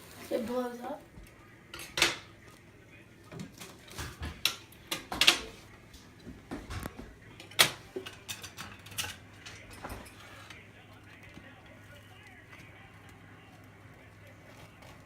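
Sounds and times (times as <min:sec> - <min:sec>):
kitchen items knocking and clicking: 0:01.7 - 0:02.4, 0:03.3 - 0:05.6, 0:06.2 - 0:10.2.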